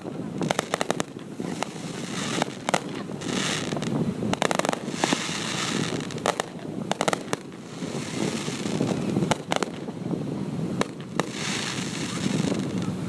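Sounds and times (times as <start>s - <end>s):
crackling hiss: 0.0s - 13.0s
fireworks cracks and bangs: 0.0s - 13.0s.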